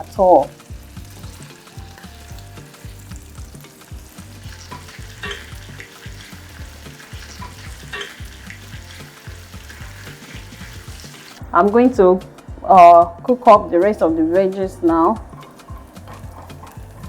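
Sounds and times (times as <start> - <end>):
prawns sizzling in oil: 0.0 - 11.4, 13.2 - 17.0
spatula scraping a pan: 0.2 - 11.4, 14.9 - 17.0.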